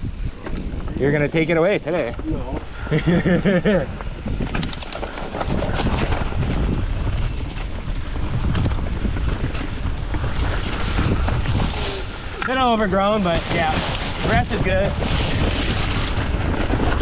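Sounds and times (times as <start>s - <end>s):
bike clicks and rattles: 0.0s - 17.0s
bike tyres rolling on rocky trail: 0.0s - 17.0s
wind buffeting microphone: 0.0s - 17.0s.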